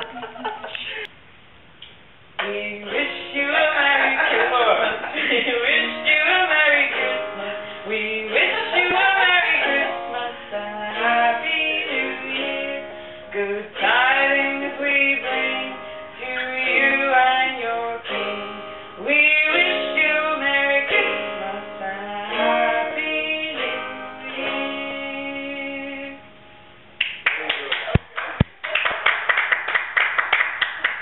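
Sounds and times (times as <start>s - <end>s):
person singing: 2.4s - 26.2s
plucked guitar: 2.4s - 28.5s.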